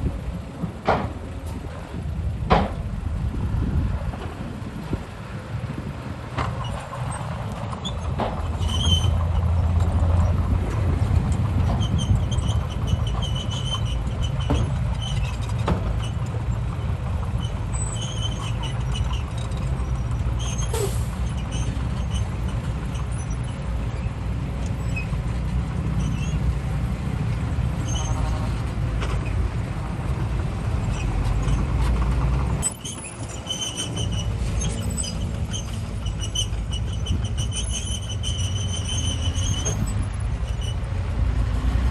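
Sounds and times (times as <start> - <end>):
diesel engine drone: 0.0 - 41.9
high-pitched squeaks: 32.6 - 40.8.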